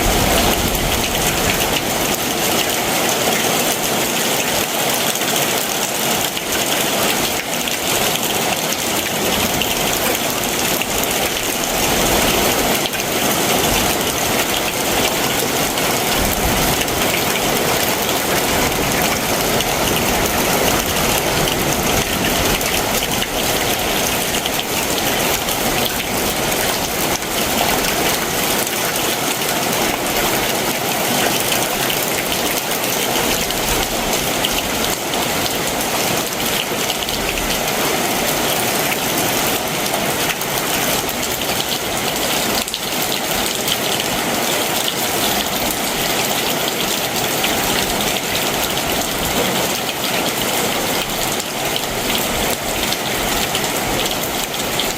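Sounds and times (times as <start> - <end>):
heavy rain hissing: 0.0 - 32.4.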